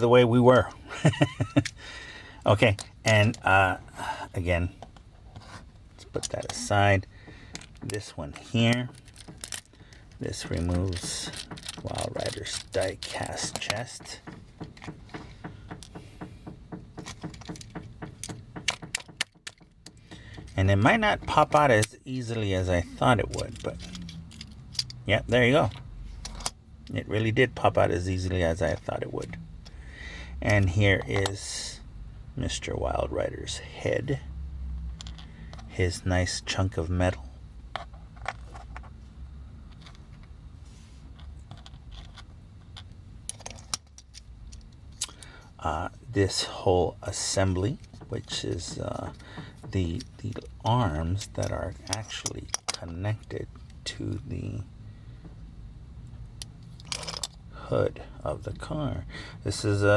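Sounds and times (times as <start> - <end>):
toy parts clicking and rattling: 5.8 - 16.0, 16.9 - 27.0, 41.2 - 45.3, 46.3 - 53.8, 56.4 - 57.4.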